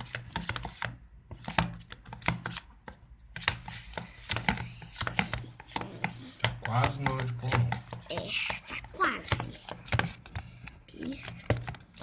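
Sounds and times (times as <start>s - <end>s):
utensil scraping and tapping a pot: 3.3s - 12.0s.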